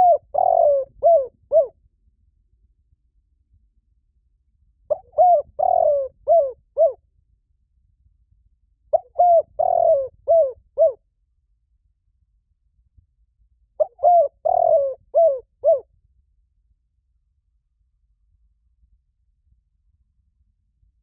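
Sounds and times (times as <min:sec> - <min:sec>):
dove cooing: 0:00.0 - 0:01.7, 0:04.9 - 0:07.0, 0:08.9 - 0:11.0, 0:13.8 - 0:15.9.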